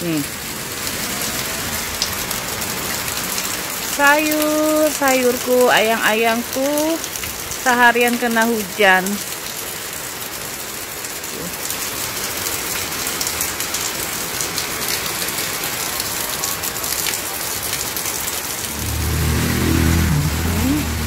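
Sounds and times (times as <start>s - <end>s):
heavy rain on plants: 0.0s - 21.0s
low engine drone: 18.7s - 21.0s.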